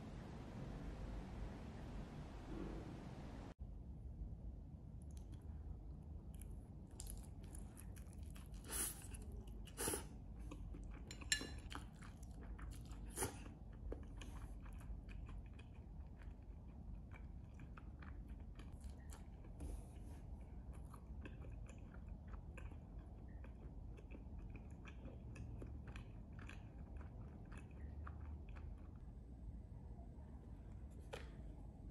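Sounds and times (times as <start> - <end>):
person chewing and crunching food: 6.3 - 29.1.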